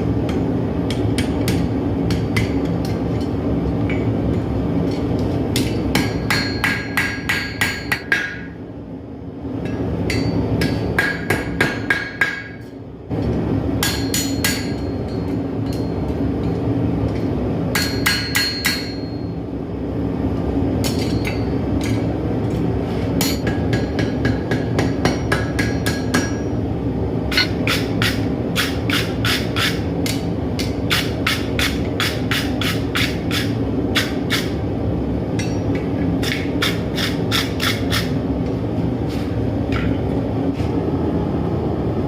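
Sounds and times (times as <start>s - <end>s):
hammer striking steel on anvil: 0.2s - 4.1s, 4.9s - 8.6s, 9.6s - 12.7s, 13.8s - 19.4s, 20.8s - 22.1s, 23.2s - 26.6s, 27.3s - 34.6s, 35.3s - 38.1s.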